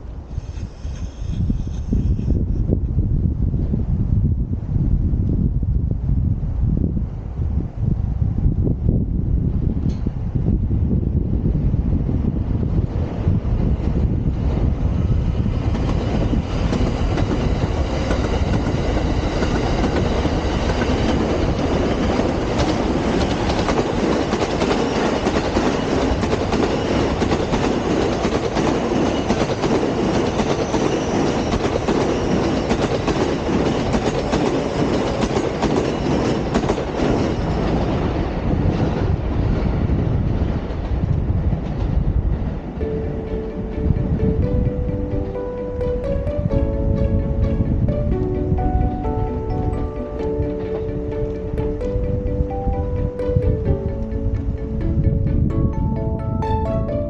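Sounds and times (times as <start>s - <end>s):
train wheel clatter: 13.7s - 39.2s.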